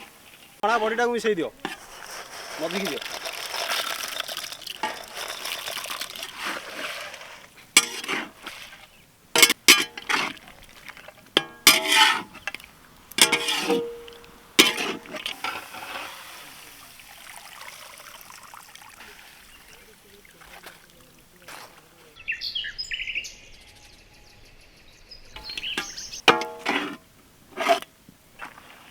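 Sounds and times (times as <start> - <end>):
metal utensils clinking on pot: 2.6 - 7.2, 7.8 - 8.4, 9.4 - 10.5, 11.3 - 15.8, 25.4 - 27.0.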